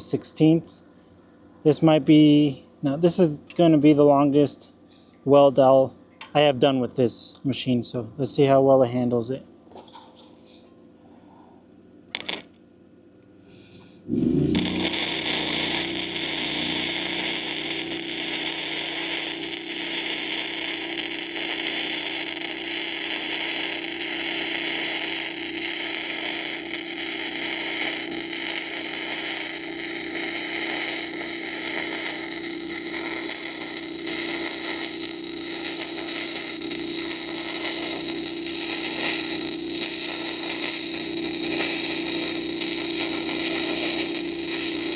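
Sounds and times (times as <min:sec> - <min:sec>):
welder arc crackling hiss: 0:12.1 - 0:12.5, 0:14.1 - 0:44.9
welder hum: 0:12.1 - 0:12.5, 0:14.0 - 0:44.9.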